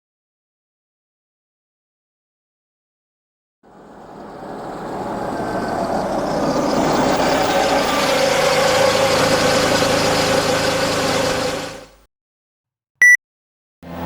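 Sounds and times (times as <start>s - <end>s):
car engine running: 3.7s - 12.0s.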